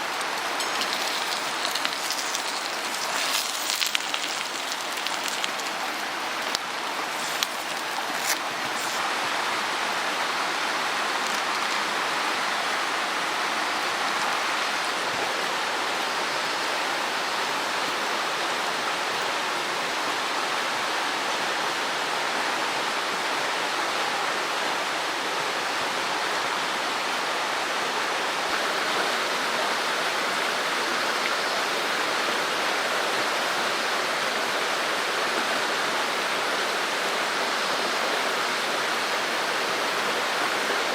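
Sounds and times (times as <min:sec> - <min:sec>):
mountain stream rushing: 0:00.0 - 0:40.9.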